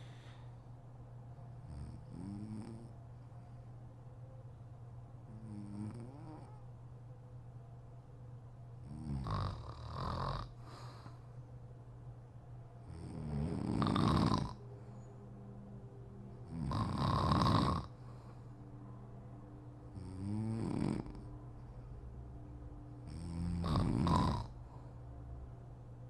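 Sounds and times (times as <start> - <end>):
steady low hum: 0.0 - 26.0
woman snoring: 8.9 - 10.7, 12.9 - 14.6, 16.5 - 18.0, 19.9 - 21.3, 23.0 - 24.6.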